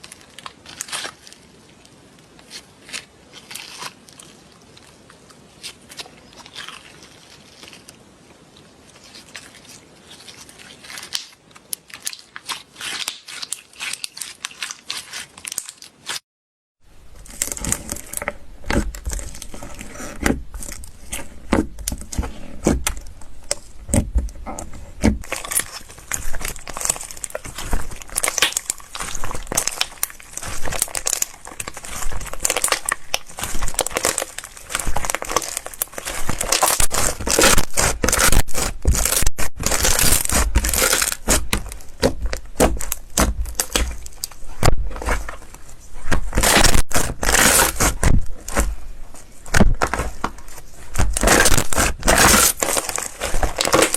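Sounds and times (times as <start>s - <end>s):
slime squeezed by hand crackling: 24.6s - 48.8s, 50.9s - 53.9s.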